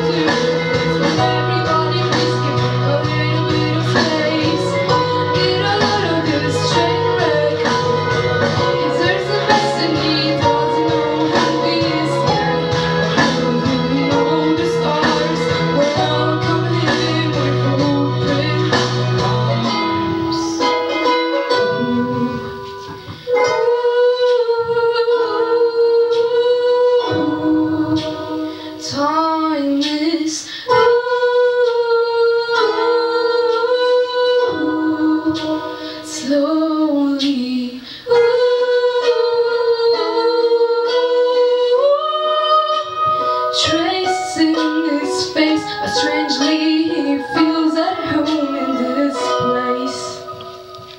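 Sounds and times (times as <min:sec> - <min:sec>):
plucked string accompaniment: 0:00.0 - 0:50.9
woman singing long notes: 0:00.0 - 0:50.9.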